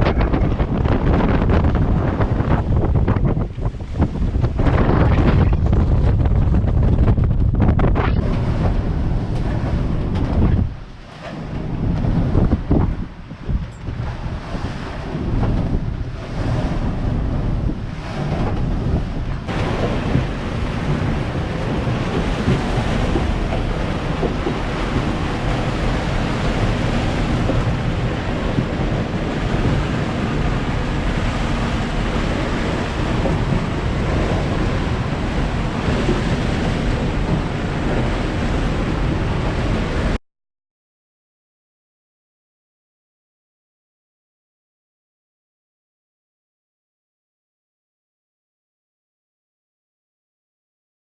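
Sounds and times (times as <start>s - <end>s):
strong wind on microphone: 0.0s - 40.2s
waves washing around boat: 0.0s - 40.2s.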